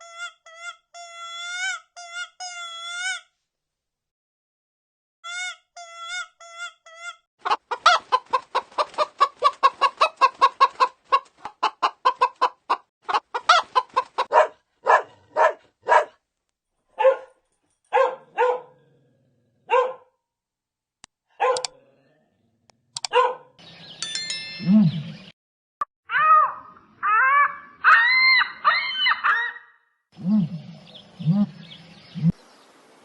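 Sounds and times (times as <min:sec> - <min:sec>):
chicken clucking: 0:06.1 - 0:14.4.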